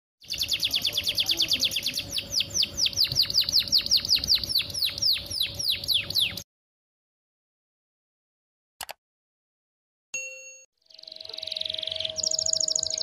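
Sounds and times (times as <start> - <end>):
canary singing a trill: 0.2 - 6.4, 10.8 - 13.0.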